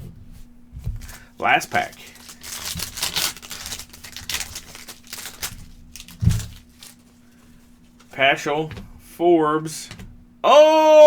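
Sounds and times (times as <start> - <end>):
card pack wrapper crinkling: 1.0 - 8.1.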